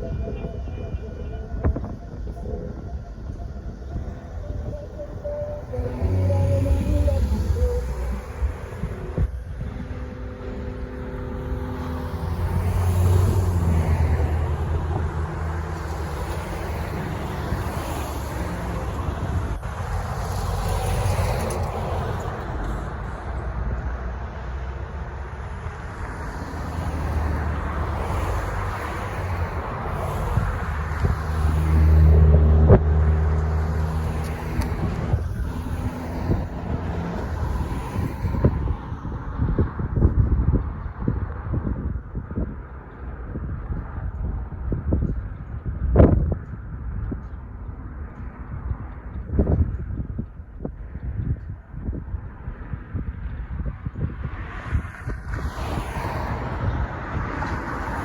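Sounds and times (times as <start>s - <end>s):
engine note rising: 0.0s - 22.8s
rumble of heavy vehicles passing: 0.0s - 58.0s.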